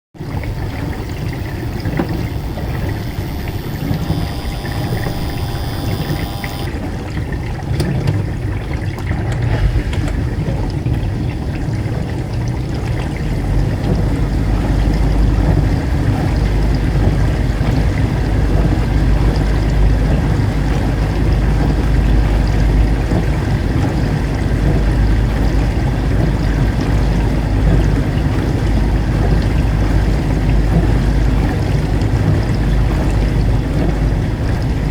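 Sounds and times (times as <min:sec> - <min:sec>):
dishwasher water spraying: 0:00.2 - 0:06.7
motor hum: 0:00.2 - 0:07.2, 0:12.8 - 0:34.9.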